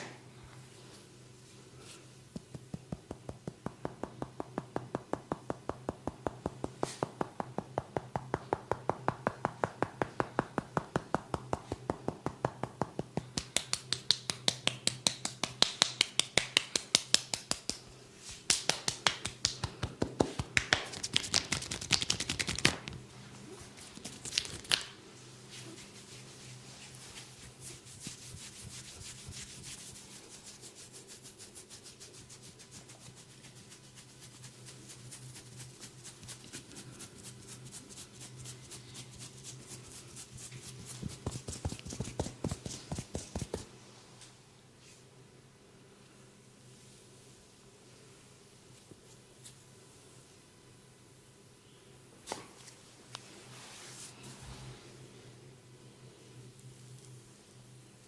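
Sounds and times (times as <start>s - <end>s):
percussive massage hand strikes: 2.4s - 17.8s.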